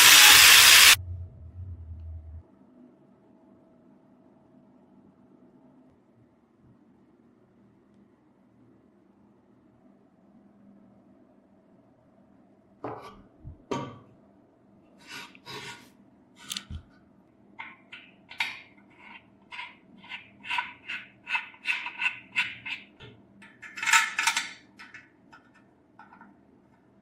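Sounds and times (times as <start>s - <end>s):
hand tool scraping metal: 0.0s - 1.0s, 15.0s - 15.9s, 18.9s - 23.0s.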